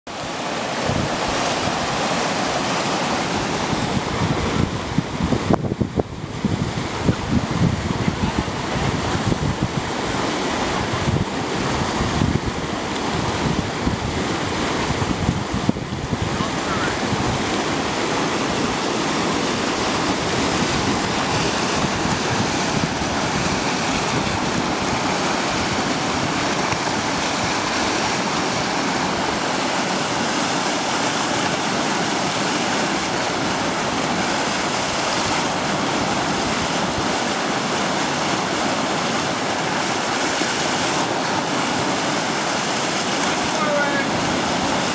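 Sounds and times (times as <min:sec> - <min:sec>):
whitewater rushing: 0:00.1 - 0:44.9
wind buffeting microphone: 0:00.7 - 0:02.1, 0:03.1 - 0:30.3.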